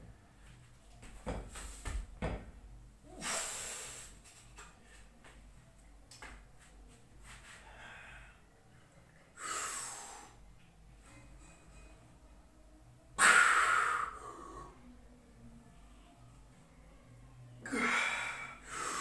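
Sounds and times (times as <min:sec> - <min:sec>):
knocks and thuds: 0:01.2 - 0:02.5
forceful hissing breaths: 0:03.2 - 0:04.2.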